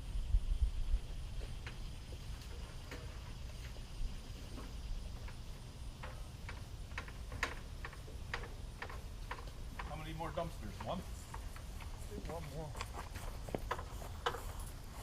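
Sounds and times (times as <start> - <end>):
low steady rumble: 0.0 - 12.2
light clicks and knocks: 4.5 - 14.8.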